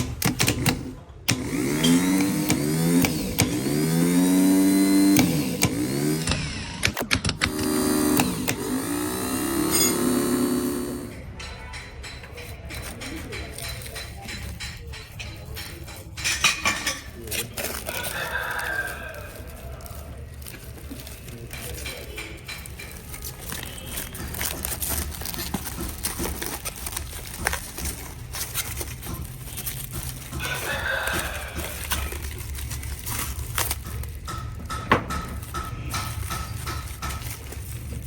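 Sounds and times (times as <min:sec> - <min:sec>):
rooster crowing: 0:17.7 - 0:20.2, 0:30.3 - 0:32.8
clicks and knocks: 0:33.6 - 0:38.0.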